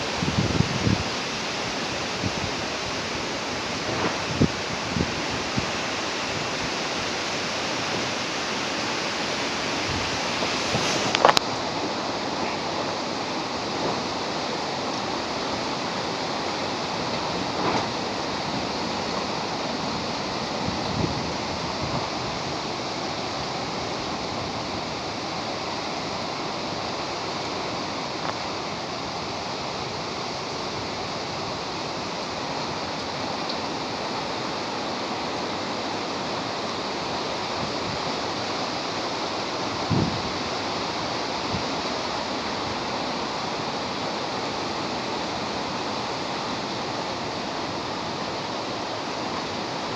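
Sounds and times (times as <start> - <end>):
storm rushing: 0.0 - 27.9.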